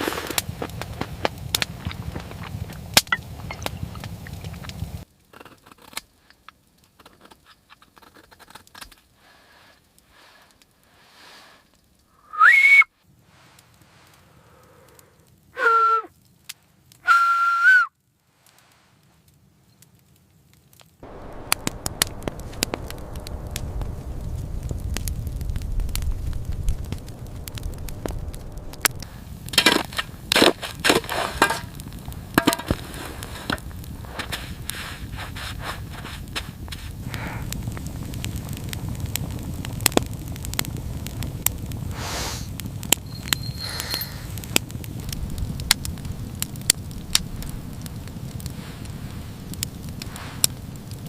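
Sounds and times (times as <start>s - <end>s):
sharp cracks and crunches: 0.0s - 10.8s, 19.3s - 51.0s
short whistle-like notes: 12.2s - 12.9s, 15.6s - 16.1s, 17.0s - 18.0s, 43.0s - 44.3s.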